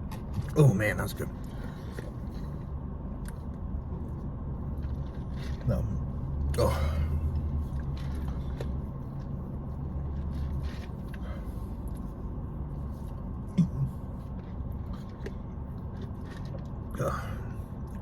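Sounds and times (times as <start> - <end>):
low hum: 0.0 - 18.0.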